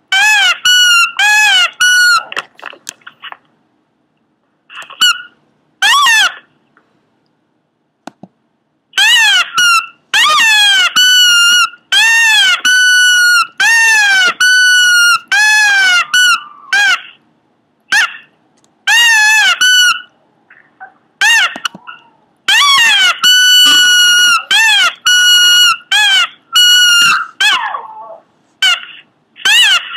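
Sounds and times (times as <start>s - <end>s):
dog squeaky cries: 0.1s - 2.4s, 4.9s - 6.5s, 9.0s - 17.2s, 17.9s - 18.3s, 18.9s - 20.2s, 21.2s - 29.9s.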